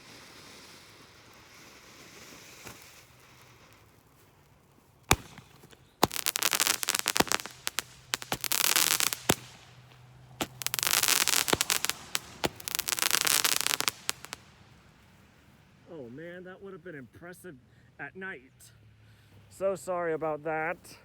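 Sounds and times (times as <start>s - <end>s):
firework crackling: 0.0s - 15.4s
firework pop: 10.4s - 14.3s.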